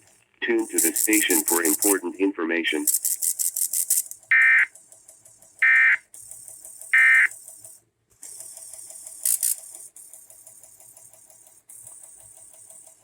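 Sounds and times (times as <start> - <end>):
fast even ticking: 0.0 - 13.0
digital data squawks: 0.5 - 2.1, 2.8 - 4.7, 5.6 - 6.1, 6.9 - 7.4.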